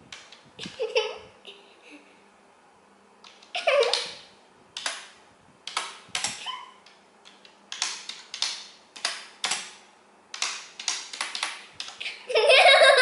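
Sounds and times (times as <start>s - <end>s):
keyboard typing: 4.8s - 12.0s.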